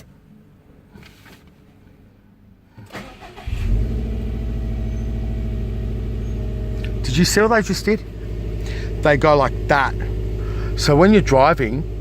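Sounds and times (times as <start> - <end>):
car engine cranking: 2.7 - 12.0
car engine starting and idling: 2.7 - 12.0.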